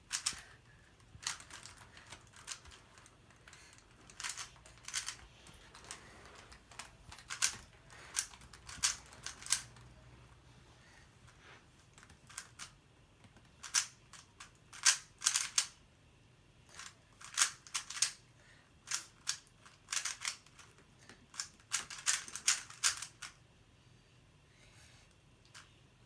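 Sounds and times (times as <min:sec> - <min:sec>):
puzzle cube clicking: 0:00.1 - 0:00.5, 0:01.1 - 0:09.9, 0:14.8 - 0:15.7, 0:16.8 - 0:18.1, 0:21.4 - 0:23.3.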